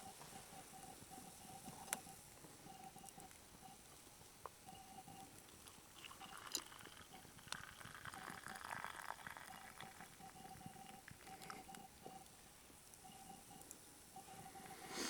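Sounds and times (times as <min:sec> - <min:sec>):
faint steady high tone: 0:00.0 - 0:04.0, 0:04.6 - 0:05.4, 0:06.0 - 0:07.3, 0:09.4 - 0:15.0
campfire crackling and hissing: 0:00.0 - 0:15.0.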